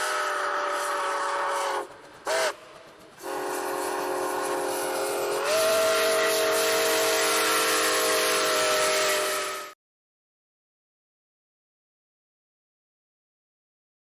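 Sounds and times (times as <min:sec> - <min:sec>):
chime train whistle blowing: 0:03.2 - 0:09.8.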